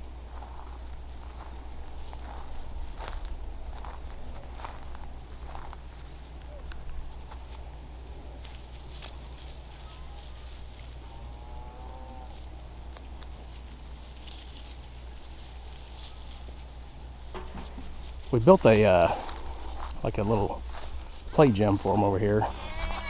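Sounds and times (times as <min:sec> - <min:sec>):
steady low rumble: 0:16.8 - 0:22.6
wavering livestock call: 0:22.4 - 0:23.0.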